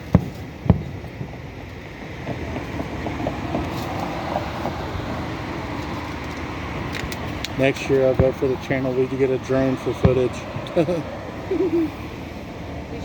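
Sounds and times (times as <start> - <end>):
car road and engine noise: 0.0 - 13.0.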